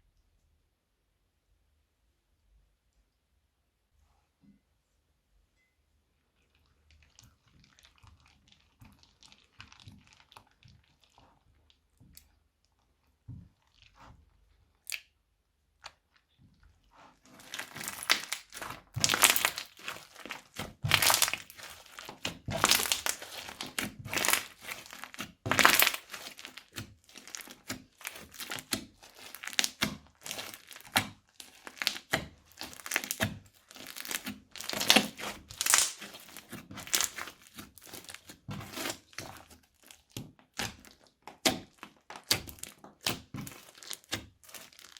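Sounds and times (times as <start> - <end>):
slime crackling and crunching: 6.6 - 12.2, 15.8 - 44.9.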